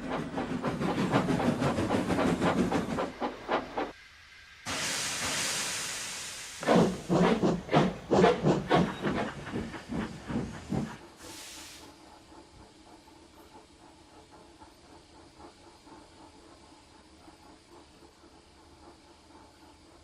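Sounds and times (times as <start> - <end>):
steam locomotive chuffing: 0.0 - 4.0, 4.7 - 20.0
steam hissing: 0.0 - 20.0.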